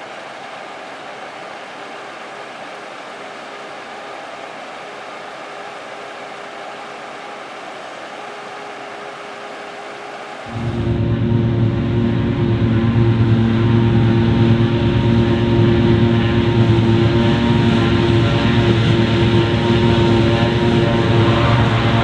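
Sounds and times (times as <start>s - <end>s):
large diesel engine droning: 10.5s - 22.0s.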